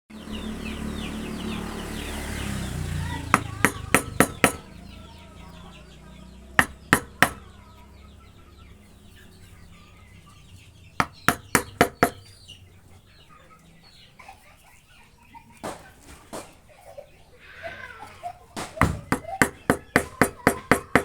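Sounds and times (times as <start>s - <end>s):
sharp hammer blows: 3.4s - 4.7s, 6.6s - 7.4s.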